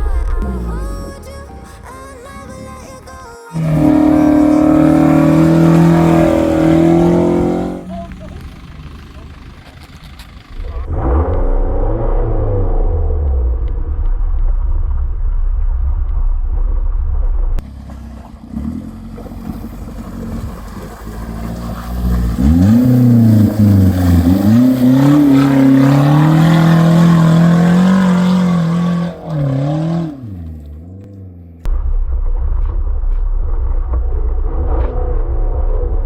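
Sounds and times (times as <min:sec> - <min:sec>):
engine revving under load: 0:03.6 - 0:14.4, 0:17.6 - 0:31.7.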